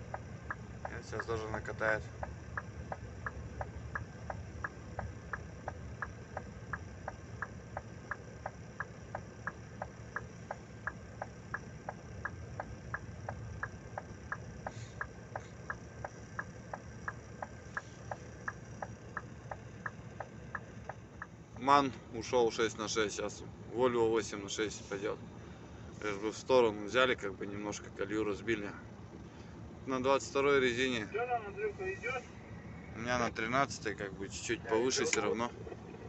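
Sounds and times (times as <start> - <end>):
indicator relay clicking: 0.0 - 21.3
diesel engine idling: 0.0 - 36.0.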